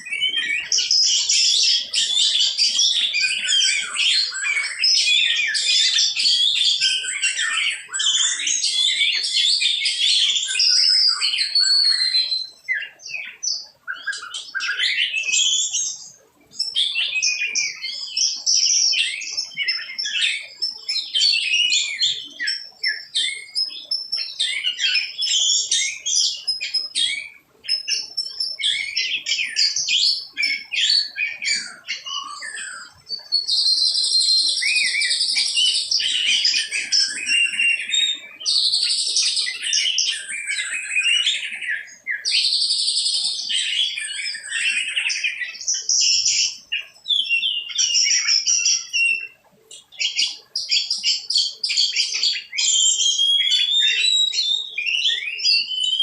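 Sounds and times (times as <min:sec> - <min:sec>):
small birds chirping: 0:00.0 - 0:56.0.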